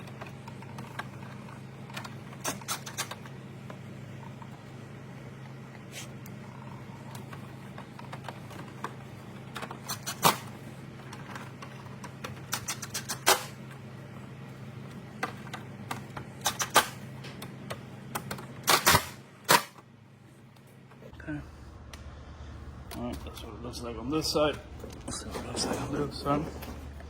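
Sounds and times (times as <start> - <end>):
steady low hum: 0.0 - 27.0.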